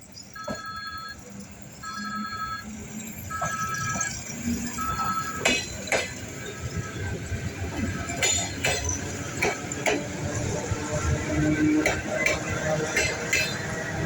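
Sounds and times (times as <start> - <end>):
train low rumble: 0.0 - 14.0
two-tone beeps: 0.4 - 1.2, 1.8 - 2.7, 3.3 - 5.6.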